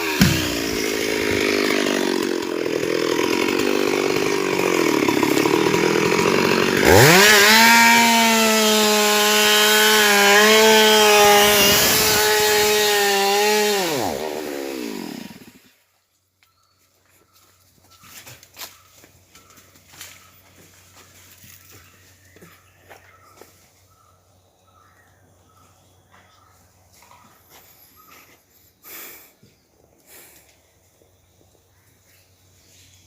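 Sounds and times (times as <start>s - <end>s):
chainsaw revving at full throttle: 0.0s - 15.7s.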